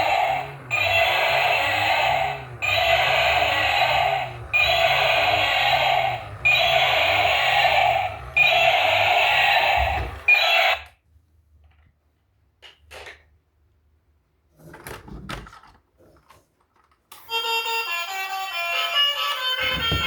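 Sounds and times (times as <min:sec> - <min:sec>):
toy vehicle electronic sound effect: 0:00.0 - 0:11.0, 0:17.2 - 0:20.0.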